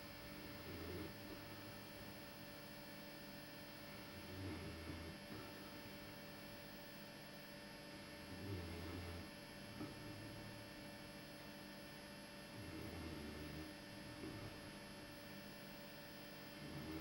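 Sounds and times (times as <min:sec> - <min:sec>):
faint snoring: 0:00.0 - 0:02.2, 0:04.0 - 0:06.2, 0:08.2 - 0:10.5, 0:12.5 - 0:14.8, 0:16.2 - 0:17.0
electrical hum: 0:00.0 - 0:17.0.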